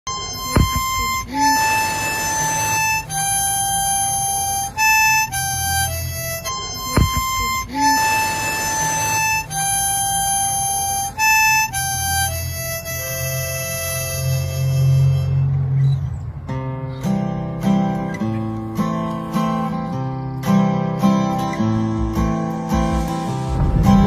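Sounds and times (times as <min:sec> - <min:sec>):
slow reedy melody: 0:00.1 - 0:24.0
low drum hit: 0:21.9 - 0:24.0.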